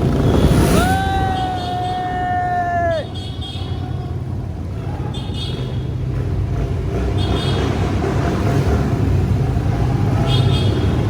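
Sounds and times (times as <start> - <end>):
engine and road rumble: 0.0 - 11.0.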